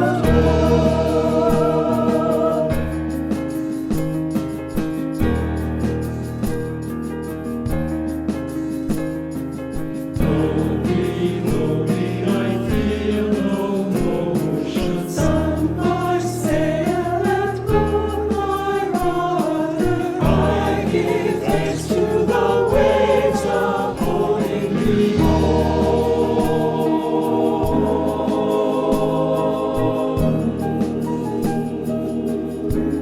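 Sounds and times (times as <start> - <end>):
choir singing: 0.0 - 3.6, 10.2 - 33.0
instrumental accompaniment: 0.0 - 33.0.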